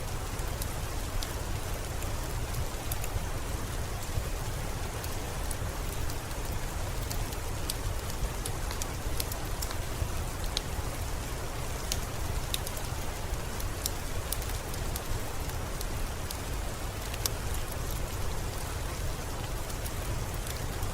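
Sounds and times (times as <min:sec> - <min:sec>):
steady rain: 0:00.0 - 0:20.9
wood fire crackling: 0:05.0 - 0:10.8, 0:11.5 - 0:20.9.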